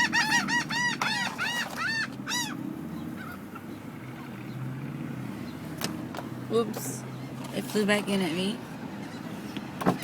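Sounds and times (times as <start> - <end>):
gulls calling: 0.0 - 5.8.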